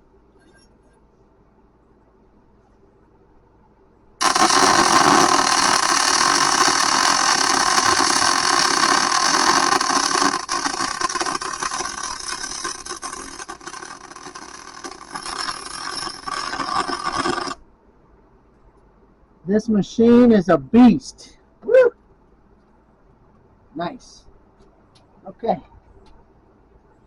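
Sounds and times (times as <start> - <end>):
welding arc hissing: 4.2 - 17.6.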